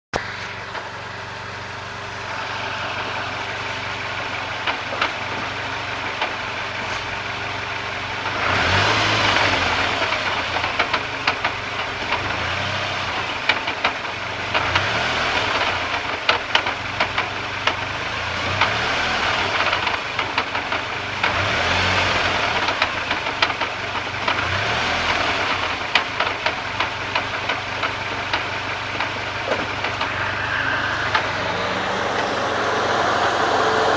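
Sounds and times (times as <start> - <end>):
car engine idling and revving: 0.2 - 33.9
sharp clunks: 26.0 - 31.5.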